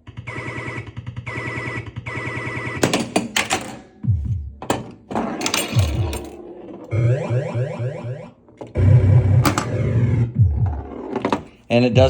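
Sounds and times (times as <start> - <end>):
mechanical clacks from pinball playfield: 2.7 - 4.0, 4.6 - 6.9, 9.4 - 9.8
electronic game sound effects: 5.4 - 11.0.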